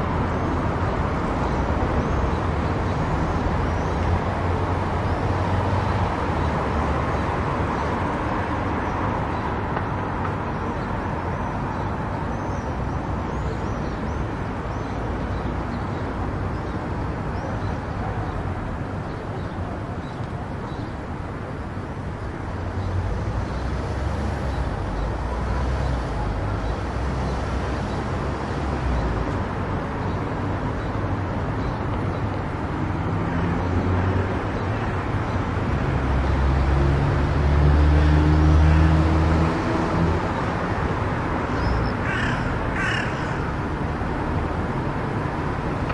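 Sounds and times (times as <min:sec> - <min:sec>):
car driving on road: 0:20.2 - 0:45.9.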